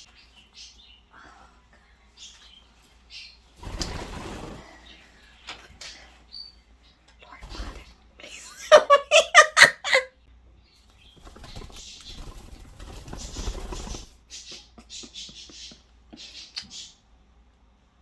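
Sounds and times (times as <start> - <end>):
bird wings flapping: 3.6 - 4.9, 11.0 - 14.2.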